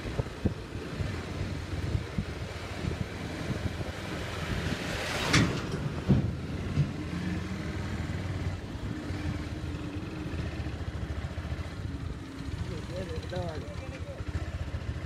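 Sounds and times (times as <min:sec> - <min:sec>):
wind on microphone: 0:00.0 - 0:05.5
motorcycle engine running: 0:06.9 - 0:15.0.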